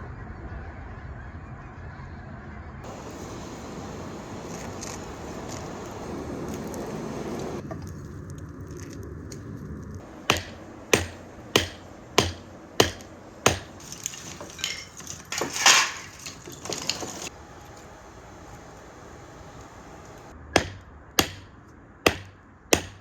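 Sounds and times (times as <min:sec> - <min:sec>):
hammer striking metal on anvil: 0:10.0 - 0:17.3, 0:19.6 - 0:21.5, 0:22.1 - 0:23.0.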